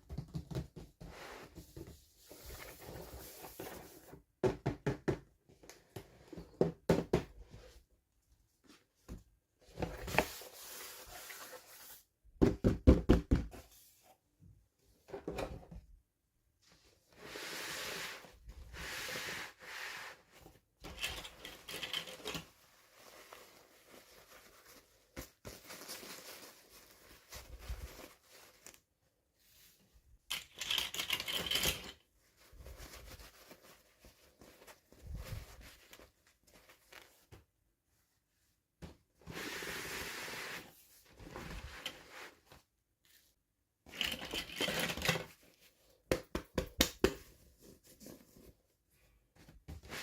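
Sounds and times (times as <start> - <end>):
plastic and paper rustling: 20.9 - 28.9, 43.9 - 45.8.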